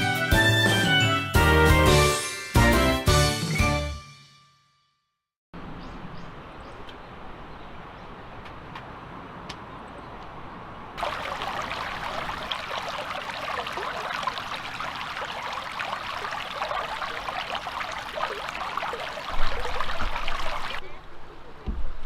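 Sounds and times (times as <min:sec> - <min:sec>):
outdoor background: 0:00.0 - 0:22.0
stream water babbling: 0:10.9 - 0:21.1.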